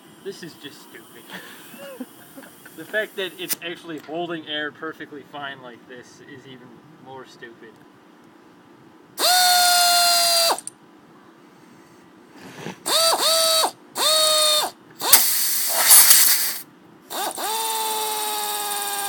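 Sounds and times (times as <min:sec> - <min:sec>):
compressed air hiss: 0:00.0 - 0:03.6, 0:14.0 - 0:17.6
air ratchet whining: 0:09.2 - 0:10.7, 0:12.8 - 0:19.0.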